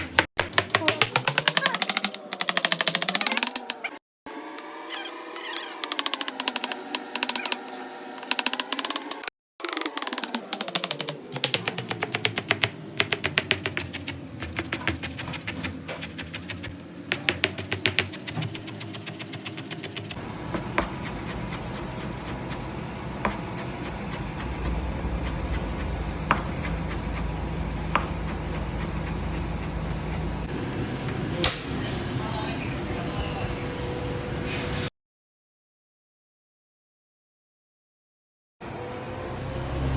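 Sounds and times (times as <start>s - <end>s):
rapid tapping and rattling: 0.6s - 3.9s, 5.8s - 7.6s, 8.2s - 30.4s
low rumble: 23.9s - 30.5s.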